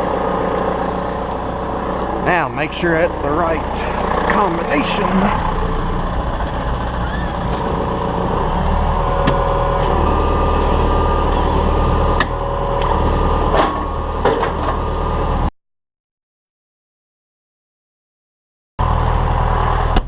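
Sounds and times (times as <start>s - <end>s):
tractor diesel engine running: 0.0s - 15.5s, 18.8s - 20.0s
clunks: 6.9s - 15.5s
thin high whine: 9.7s - 15.5s.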